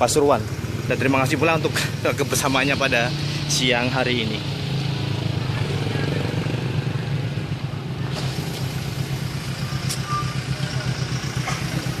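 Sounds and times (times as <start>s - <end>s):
engine running with low throb: 0.0s - 12.0s.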